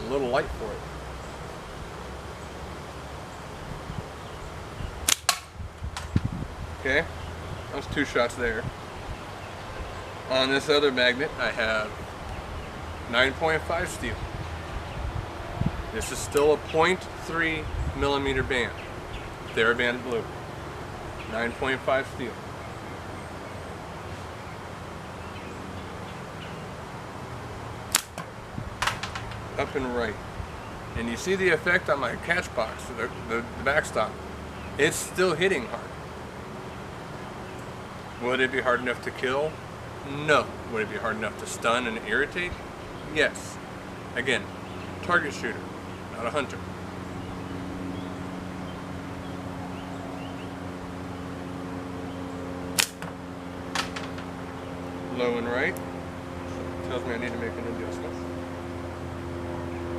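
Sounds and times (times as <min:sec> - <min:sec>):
low mechanical hum: 0:00.0 - 0:59.9
slingshot snap: 0:05.0 - 0:06.2, 0:27.9 - 0:29.4, 0:52.8 - 0:53.2.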